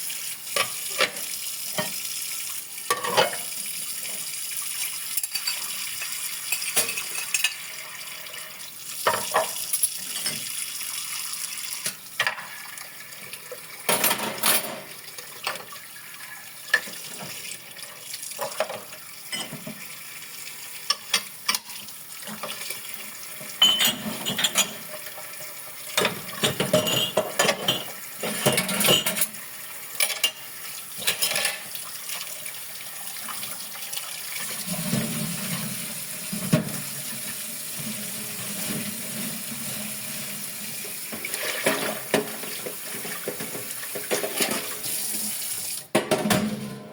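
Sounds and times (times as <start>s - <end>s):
running tap water: 0.0s - 46.0s
dishes and cutlery clinking: 2.9s - 3.5s, 6.5s - 7.7s, 13.9s - 15.7s, 18.4s - 19.8s, 23.5s - 25.2s, 26.0s - 29.4s, 30.0s - 30.4s, 31.0s - 31.7s, 41.6s - 44.8s.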